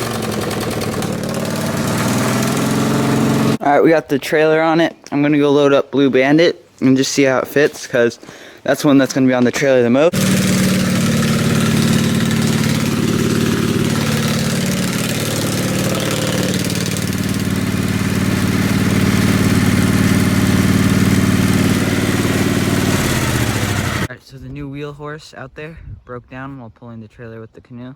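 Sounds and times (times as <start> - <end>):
lawn mower engine running: 0.0 - 3.6, 10.1 - 24.1.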